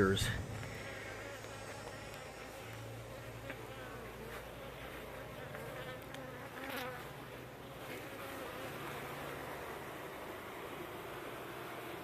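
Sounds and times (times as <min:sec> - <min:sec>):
honeybees buzzing: 0:00.0 - 0:12.0.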